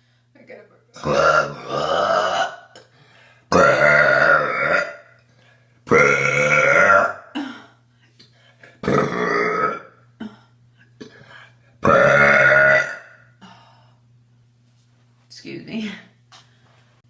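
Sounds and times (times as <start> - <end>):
woman burping loudly: 1.0 - 2.8, 3.5 - 5.2, 5.9 - 7.8, 8.8 - 11.1, 11.8 - 13.3.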